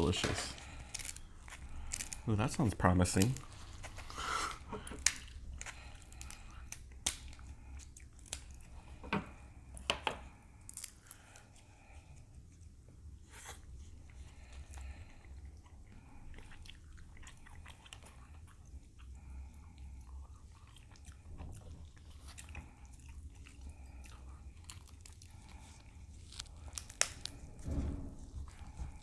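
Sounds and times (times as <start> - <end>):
chewing and biting crab meat: 0.6 - 9.5, 14.0 - 27.6.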